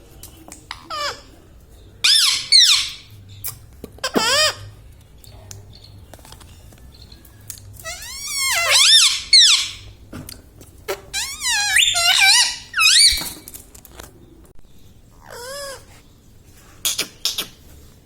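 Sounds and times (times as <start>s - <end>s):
parrot squeaky calls: 2.0s - 4.8s, 7.8s - 10.0s, 11.1s - 13.5s, 15.2s - 16.0s.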